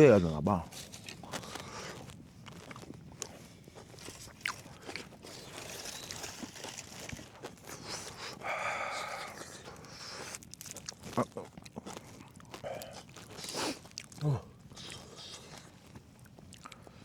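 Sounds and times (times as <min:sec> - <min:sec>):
small clicks and crunches: 0:00.7 - 0:08.4.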